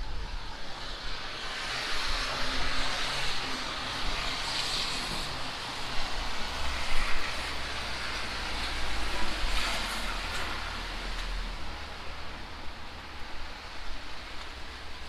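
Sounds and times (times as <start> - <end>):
strong wind: 0.0 - 15.0
tyres swishing on wet road: 0.2 - 15.0
rain hissing: 3.8 - 15.0.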